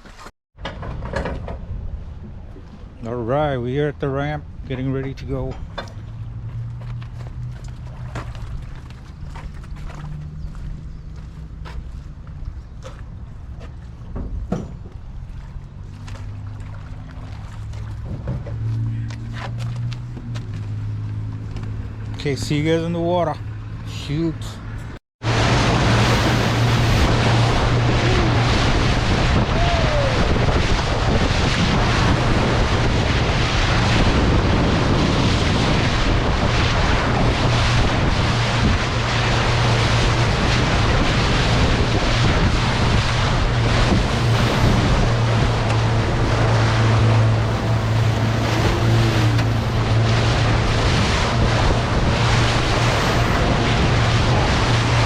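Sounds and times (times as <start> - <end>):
water rushing along hull: 1.6 - 24.4, 25.2 - 55.0
motorboat engine drone: 5.6 - 22.2, 24.6 - 55.0
wind buffeting microphone: 25.2 - 55.0.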